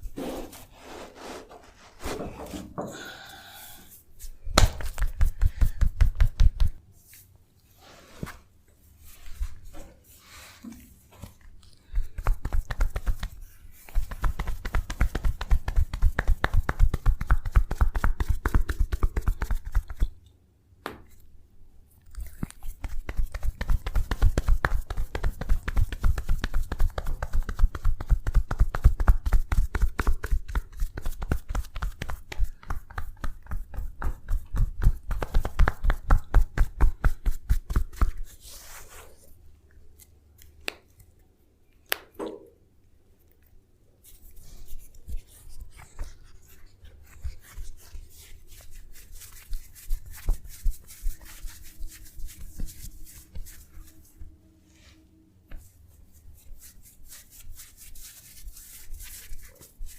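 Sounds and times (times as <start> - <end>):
hand tapping on body: 4.5 - 6.8, 22.8 - 38.2.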